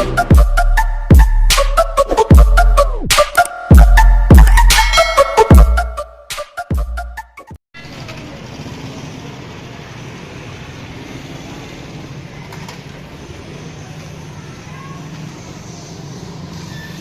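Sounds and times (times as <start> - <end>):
street noise: 7.8 - 17.0.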